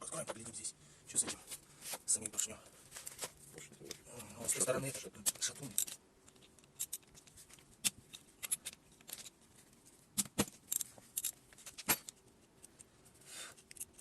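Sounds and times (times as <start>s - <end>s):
metal tools clicking and clinking: 2.1s - 2.6s, 4.6s - 9.4s, 10.2s - 12.9s, 13.6s - 14.0s.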